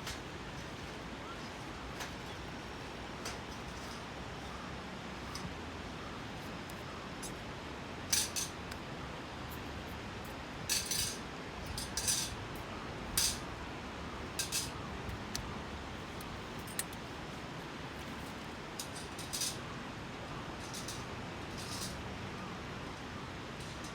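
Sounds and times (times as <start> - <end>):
steady background hiss: 0.0 - 23.9
clicks and scrapes of handled gear: 16.1 - 17.1.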